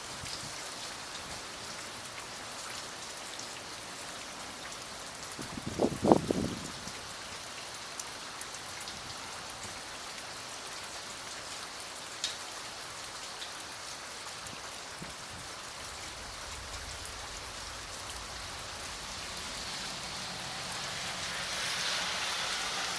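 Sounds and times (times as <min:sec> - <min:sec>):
steady rain falling: 0:00.0 - 0:22.9.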